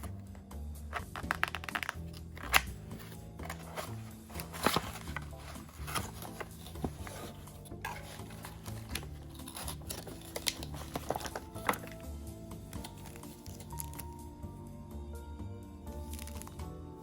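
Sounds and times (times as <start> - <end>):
soft background music with bass: 0.0 - 17.0
objects clicking and rustling: 0.9 - 12.1.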